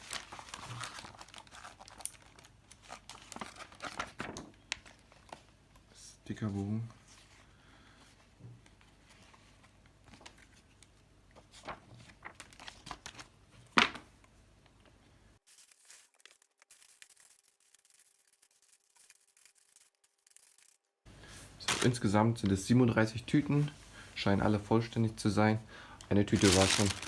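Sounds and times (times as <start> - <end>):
plastic bags crinkling: 0.0 - 5.0, 15.4 - 20.8, 21.6 - 22.2, 26.1 - 27.0.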